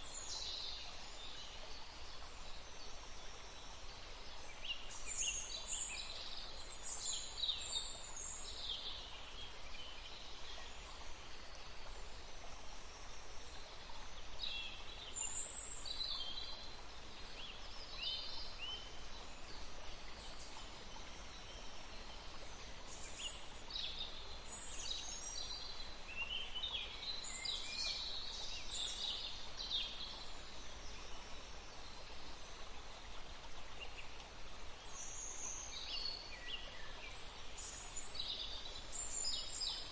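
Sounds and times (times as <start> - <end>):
flowing water: 0.0 - 39.9.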